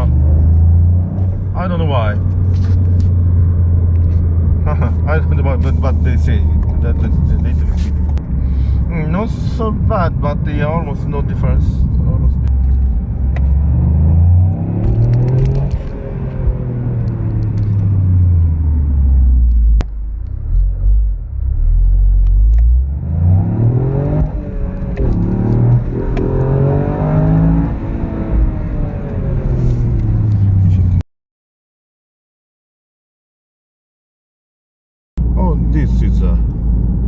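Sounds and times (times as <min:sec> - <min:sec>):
car engine accelerating: 0:00.0 - 0:31.0.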